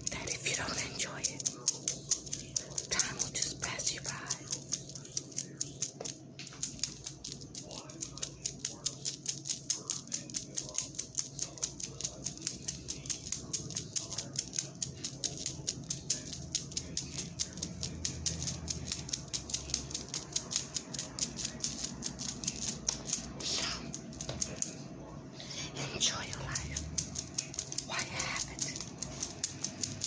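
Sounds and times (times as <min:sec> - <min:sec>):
faint low hum: 0:00.0 - 0:30.0
clock ticking fast: 0:04.4 - 0:23.3, 0:28.8 - 0:30.0.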